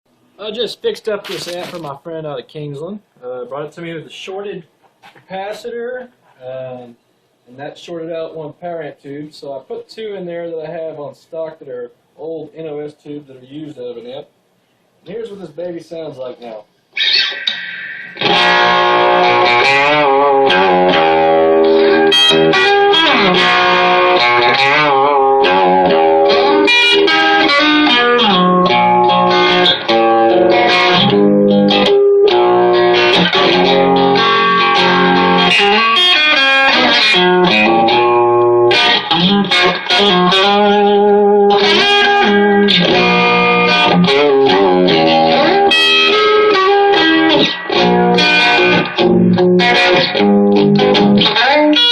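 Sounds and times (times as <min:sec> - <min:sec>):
electric guitar playing: 0:17.0 - 0:51.9.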